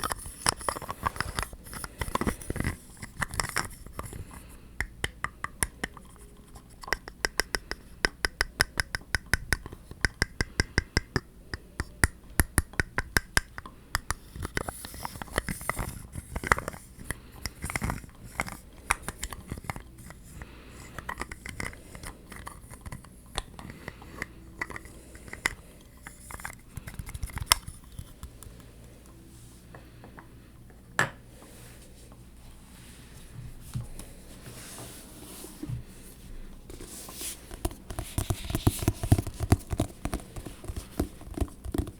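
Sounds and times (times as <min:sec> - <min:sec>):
scratching on objects: 0:36.7 - 0:41.9
tapping on objects: 0:37.5 - 0:41.9.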